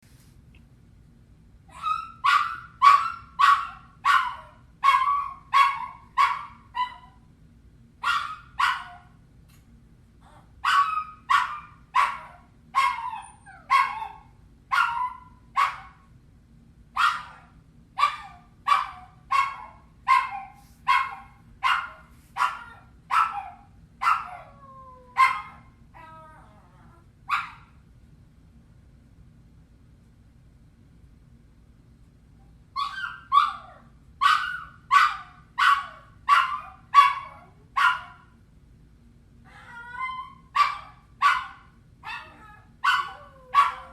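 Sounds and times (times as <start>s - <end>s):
dog yelping and crying: 1.7s - 7.2s, 10.2s - 15.9s, 17.0s - 27.6s, 32.8s - 38.2s, 39.5s - 43.9s.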